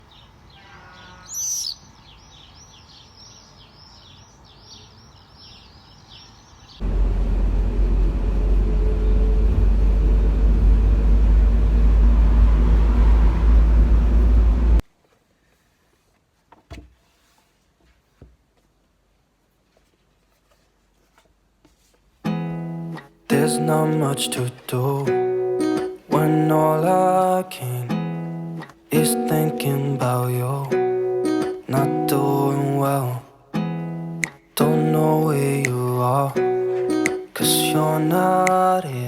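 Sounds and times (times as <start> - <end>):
birds chirping: 0.0 - 10.0
loud steady low rumble: 6.8 - 14.8.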